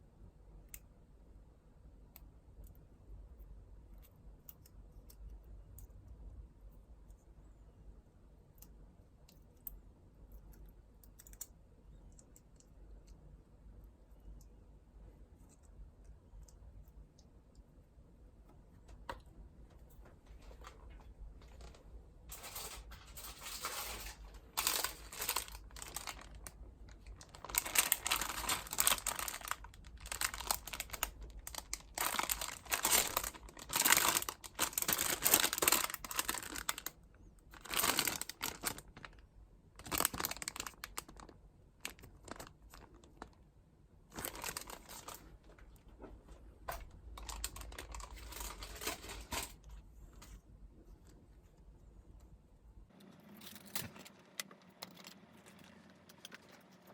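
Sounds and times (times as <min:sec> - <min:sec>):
paper crinkling and tearing: 0:21.4 - 0:36.9, 0:37.6 - 0:39.2, 0:39.8 - 0:43.2, 0:44.1 - 0:45.3, 0:47.2 - 0:49.6.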